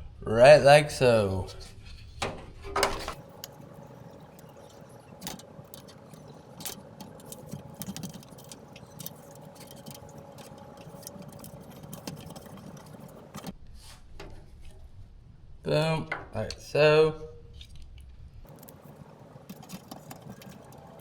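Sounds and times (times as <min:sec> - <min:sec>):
hands clicking and scraping part: 0:04.4 - 0:13.6, 0:17.6 - 0:21.0.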